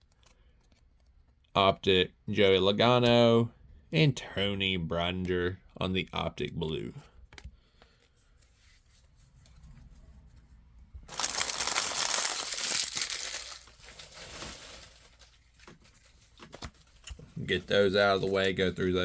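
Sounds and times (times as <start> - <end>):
wrapper tearing and crinkling: 11.1 - 15.4.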